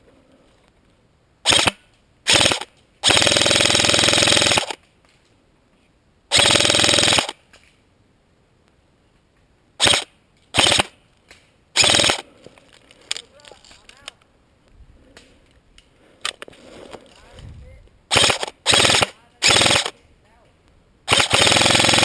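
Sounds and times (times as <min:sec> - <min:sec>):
airsoft rifle automatic bursts: 0:01.4 - 0:04.8, 0:06.3 - 0:07.4, 0:09.8 - 0:10.9, 0:11.8 - 0:12.2, 0:18.1 - 0:20.0, 0:21.1 - 0:22.0.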